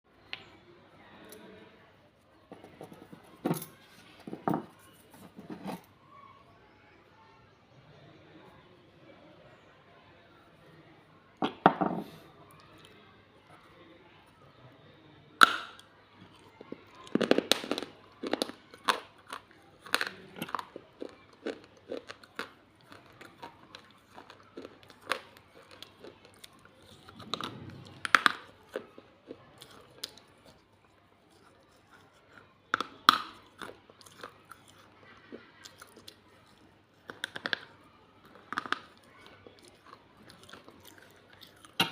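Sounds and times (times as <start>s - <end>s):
clay pot pieces crunching: 2.5s - 5.9s, 15.4s - 41.9s.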